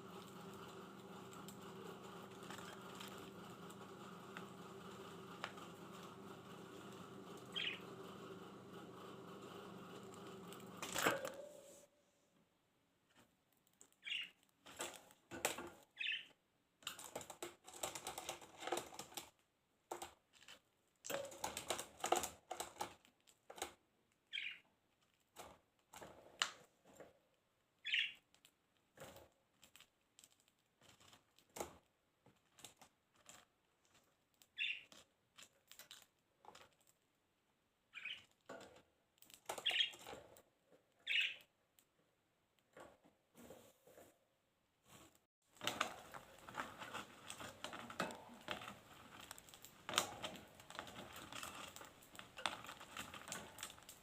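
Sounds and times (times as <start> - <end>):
budgerigars clicking and scratching: 7.3 - 8.1, 14.0 - 14.9, 34.5 - 35.0, 38.0 - 38.3, 39.4 - 40.2.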